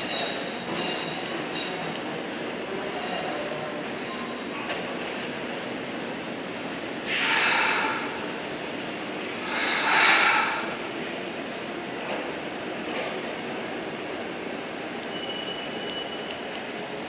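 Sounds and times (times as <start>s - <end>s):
electric train rumbling on rails: 0.0s - 17.0s
loud hissing bursts: 7.1s - 8.4s, 9.3s - 11.0s.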